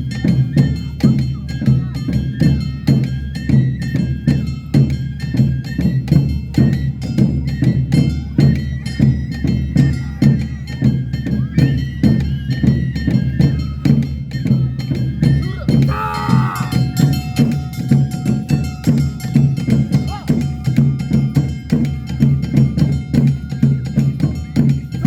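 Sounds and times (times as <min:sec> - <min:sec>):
drums: 0:00.0 - 0:25.0
high flute melody: 0:15.8 - 0:17.1.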